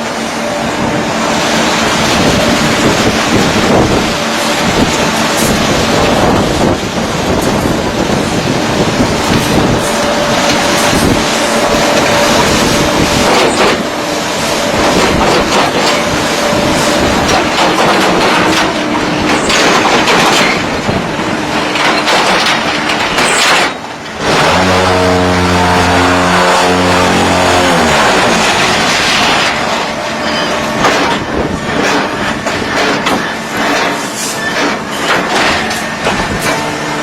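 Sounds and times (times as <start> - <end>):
block press machine rattling: 14.7 - 24.2, 30.7 - 36.7
motor drone winding down: 24.2 - 28.6.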